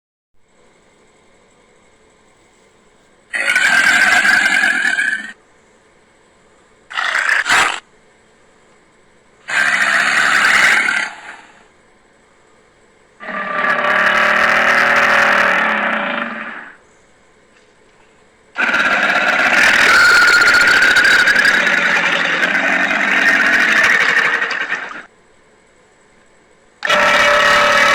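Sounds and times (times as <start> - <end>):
crocodile calls: 3.3 - 5.4, 6.9 - 7.9, 9.4 - 11.7, 13.2 - 16.8, 18.6 - 25.1, 26.8 - 27.9.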